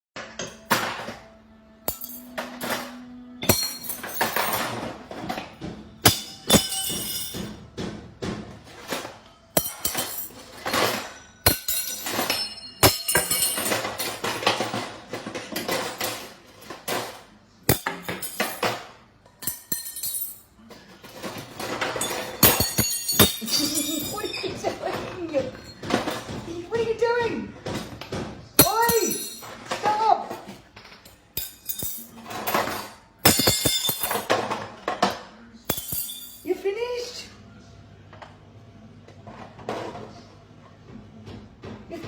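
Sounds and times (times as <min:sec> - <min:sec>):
clattering and clinking impacts: 0:00.2 - 0:26.9, 0:27.6 - 0:36.5
music: 0:00.2 - 0:42.0.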